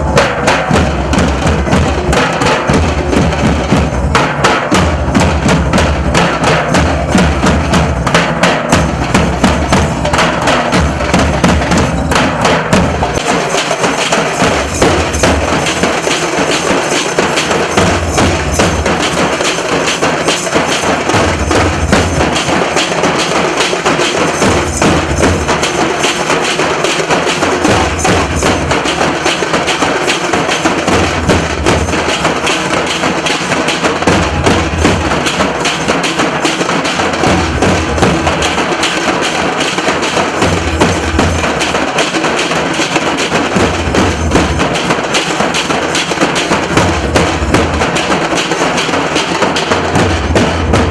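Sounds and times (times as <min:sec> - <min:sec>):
deep bass drum beats: 0:00.0 - 0:13.4, 0:33.9 - 0:41.7, 0:49.6 - 0:50.9.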